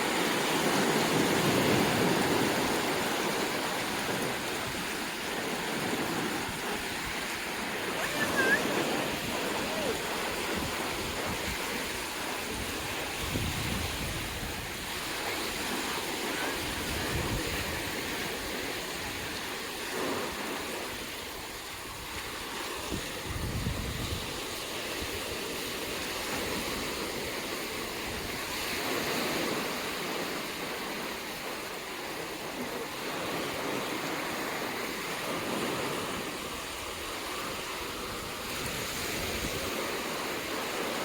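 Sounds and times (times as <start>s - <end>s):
wind buffeting microphone: 0.0s - 31.4s
surf washing onto beach: 0.0s - 41.0s.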